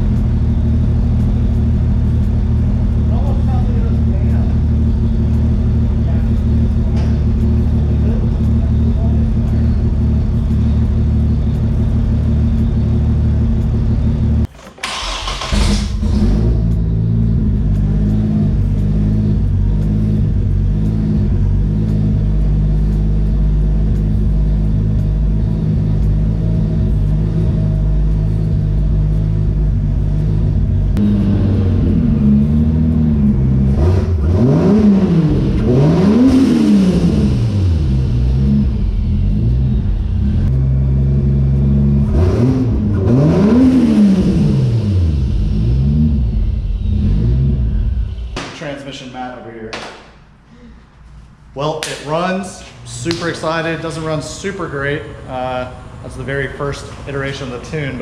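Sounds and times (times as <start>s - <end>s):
car engine idling roughly: 0.0s - 31.8s
engine revving: 0.0s - 48.5s.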